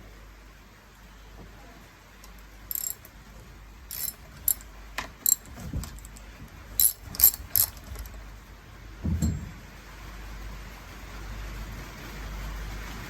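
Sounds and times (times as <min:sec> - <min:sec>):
metallic clicks of hand tools: 0:02.7 - 0:03.1, 0:03.9 - 0:04.6, 0:05.3 - 0:06.2, 0:06.8 - 0:08.1.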